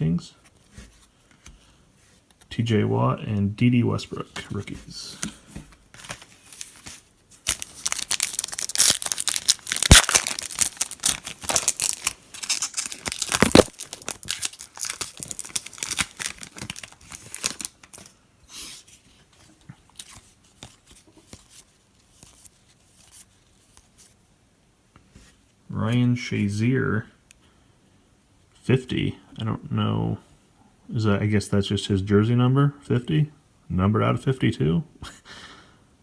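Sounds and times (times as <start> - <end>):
wrapper tearing and crinkling: 6.0 - 18.2.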